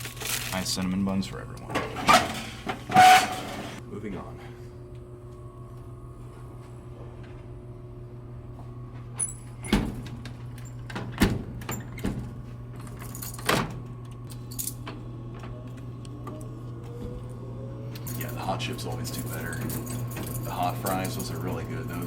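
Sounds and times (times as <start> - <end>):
steady low hum: 0.0 - 22.0
keys jingling: 12.8 - 13.7, 18.1 - 22.0.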